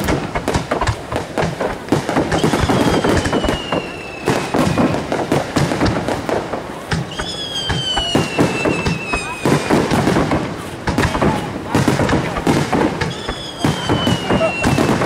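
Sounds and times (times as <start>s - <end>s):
fireworks bursting and crackling: 0.0s - 15.0s
falling whistling tone: 2.3s - 5.0s, 7.0s - 9.9s, 13.0s - 15.0s.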